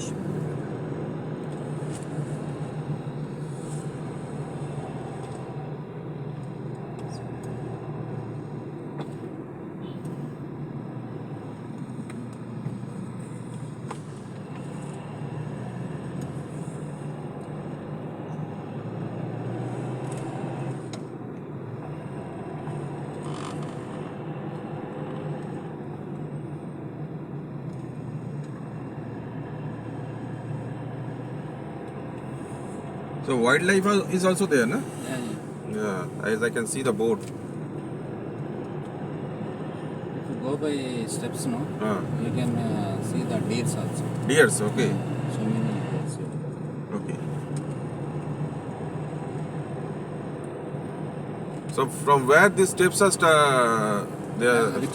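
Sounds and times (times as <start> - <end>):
car engine climbing hill: 0.0 - 54.9
road noise inside car: 0.0 - 54.9.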